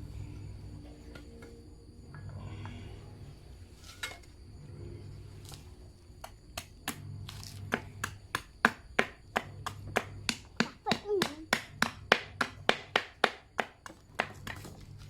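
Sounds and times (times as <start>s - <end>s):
tool knocking on wood: 7.7s - 14.8s.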